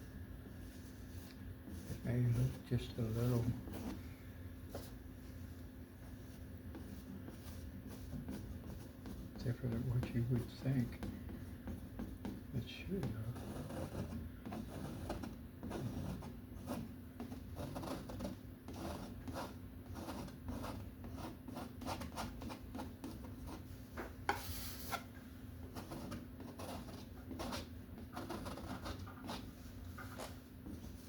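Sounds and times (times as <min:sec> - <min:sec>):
paint brush rubbing on canvas: 0:00.4 - 0:04.0, 0:04.7 - 0:23.7, 0:24.3 - 0:25.1.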